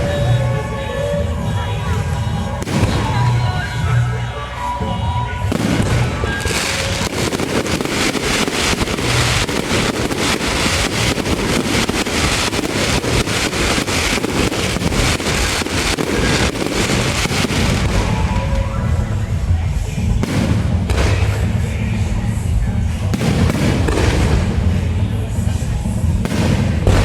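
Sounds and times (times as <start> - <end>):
fireworks crackling: 0.0 - 27.0
music: 0.0 - 27.0.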